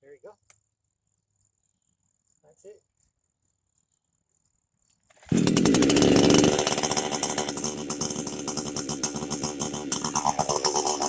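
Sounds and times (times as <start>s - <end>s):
chainsaw engine running at speed: 5.2s - 11.0s.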